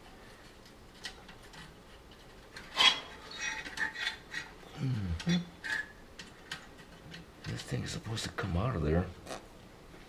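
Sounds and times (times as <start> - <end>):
metal parts clicking and rattling: 0.3 - 4.6, 5.2 - 7.8
metal scraping: 2.2 - 4.6.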